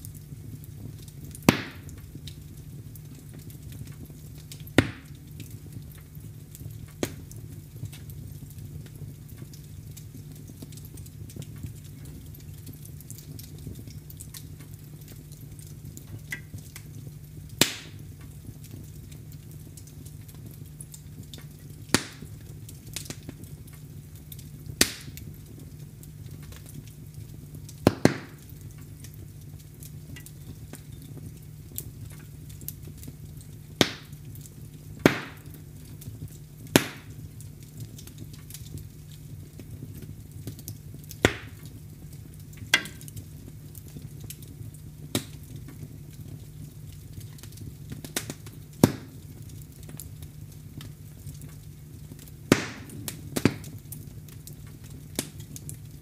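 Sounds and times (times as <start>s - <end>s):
fire crackling in a fireplace: 0.0s - 56.0s
loud fire pops: 0.2s - 56.0s.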